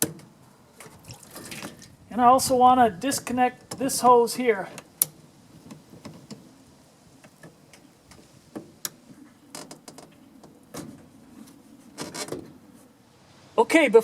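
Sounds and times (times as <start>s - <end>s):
clicks and knocks of hose clamp: 0.0s - 1.8s.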